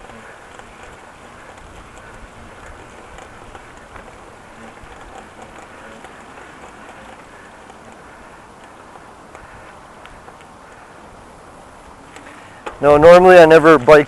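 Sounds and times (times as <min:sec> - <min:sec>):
light ticks: 0:00.0 - 0:10.9
bicycle tyre noise: 0:00.0 - 0:14.0.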